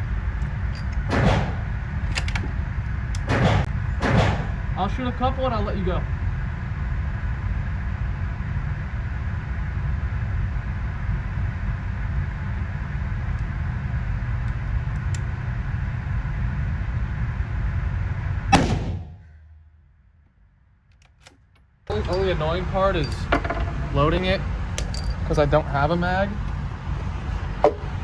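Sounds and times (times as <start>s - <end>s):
steady low rumble: 0.0s - 28.0s
rifle shot crack: 18.5s - 19.6s.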